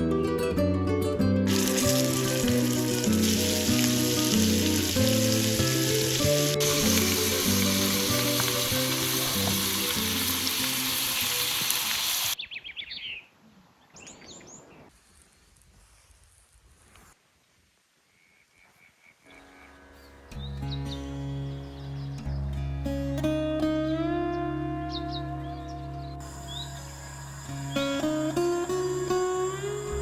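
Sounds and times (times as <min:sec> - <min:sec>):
background music: 0:00.0 - 0:12.2, 0:19.5 - 0:30.0
steaks sizzling in a pan: 0:01.5 - 0:12.4
quiet bird chirps: 0:12.4 - 0:15.6.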